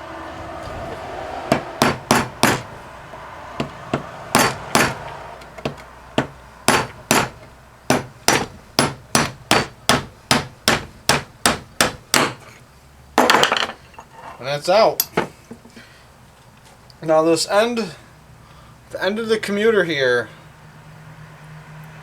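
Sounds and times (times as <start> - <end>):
hammer striking metal: 1.5 - 2.7, 3.6 - 12.4.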